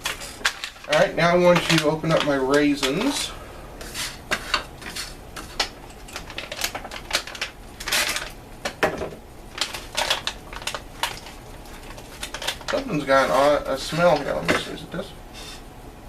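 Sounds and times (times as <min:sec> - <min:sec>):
plastic pouch crinkling: 0:00.0 - 0:03.2, 0:05.6 - 0:08.4, 0:09.5 - 0:14.4.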